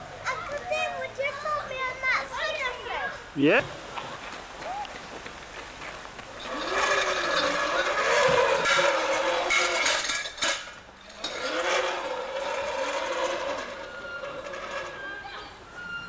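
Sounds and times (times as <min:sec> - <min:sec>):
playground spinner squeaking: 0:06.3 - 0:16.0.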